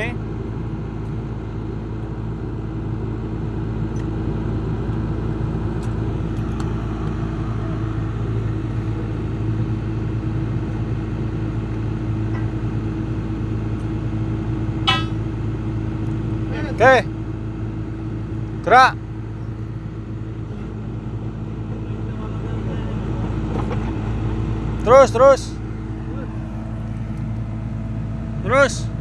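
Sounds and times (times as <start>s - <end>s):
drilling rig engine humming: 0.0s - 29.0s.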